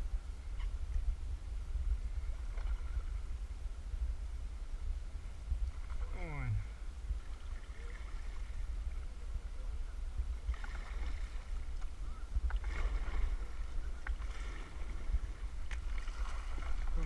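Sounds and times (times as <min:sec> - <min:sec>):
wind rumble on microphone: 0:00.0 - 0:17.0
water splashes: 0:02.2 - 0:03.3, 0:05.6 - 0:09.2, 0:10.4 - 0:17.0
rushing river water: 0:05.6 - 0:09.7, 0:10.4 - 0:17.0.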